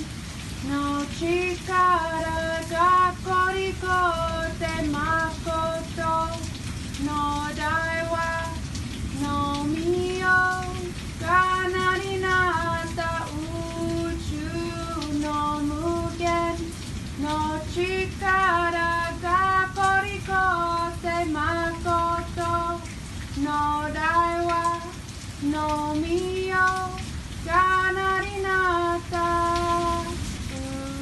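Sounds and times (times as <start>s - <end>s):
background hiss: 0.0s - 31.0s
high voice singing: 9.2s - 31.0s.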